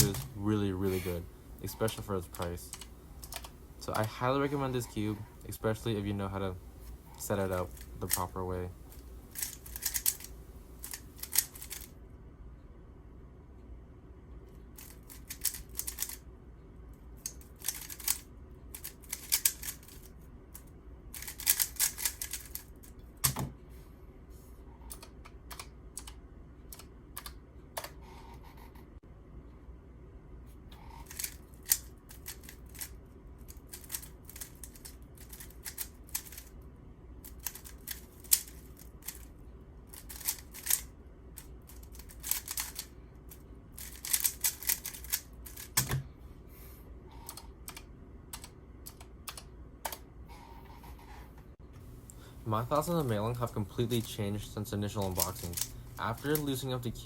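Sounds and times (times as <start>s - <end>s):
puzzle cube rapid clicking: 9.3s - 11.9s, 14.8s - 16.2s, 17.3s - 18.2s, 18.8s - 20.1s, 21.2s - 23.4s, 31.0s - 32.9s, 33.5s - 36.5s, 37.3s - 39.3s, 39.9s - 40.9s, 41.7s - 42.9s, 43.8s - 46.0s, 54.9s - 56.9s.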